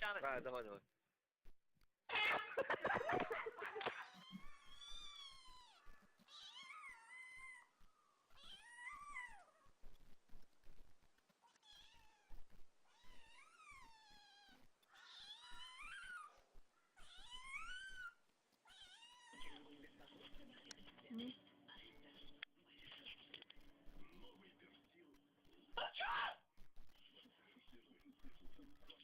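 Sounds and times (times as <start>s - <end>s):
cat meowing: 4.0s - 7.7s, 8.3s - 9.7s, 11.5s - 16.4s, 17.0s - 19.6s.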